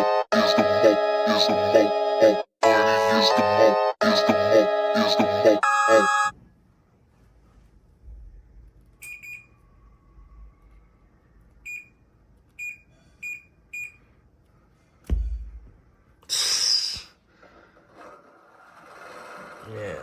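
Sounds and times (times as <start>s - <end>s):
short electronic beeps: 3.4s - 6.3s
dull thud: 15.1s - 15.8s.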